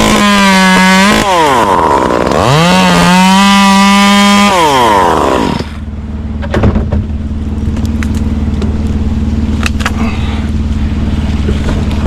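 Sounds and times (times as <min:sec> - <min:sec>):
chainsaw throttling down to idle: 0:00.0 - 0:05.8
sharp knocks: 0:06.4 - 0:07.1.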